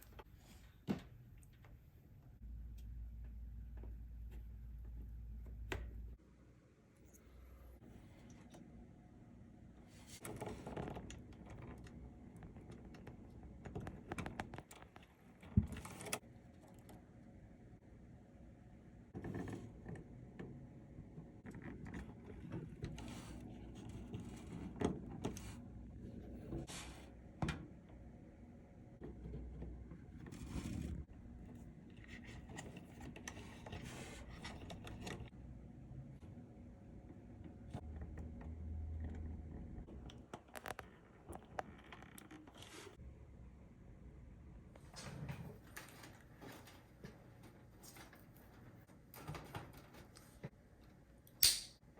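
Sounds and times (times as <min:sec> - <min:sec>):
computer parts scraping and rustling: 0:31.8 - 0:35.4.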